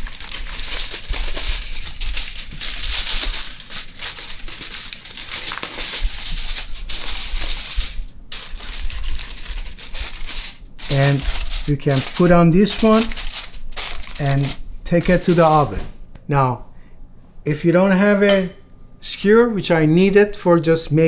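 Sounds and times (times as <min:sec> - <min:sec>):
aluminum foil crinkling: 0:00.0 - 0:16.0.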